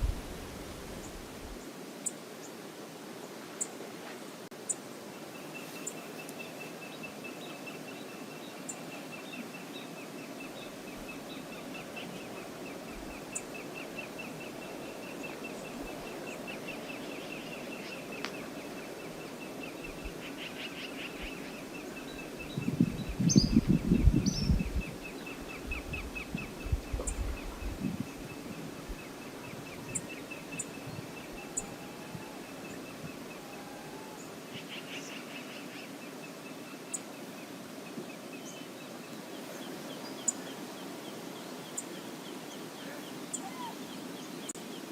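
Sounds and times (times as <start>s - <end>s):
low rumble on microphone: 0.0s - 1.6s, 22.5s - 25.0s, 25.7s - 29.0s
short high bird calls: 43.3s - 43.8s.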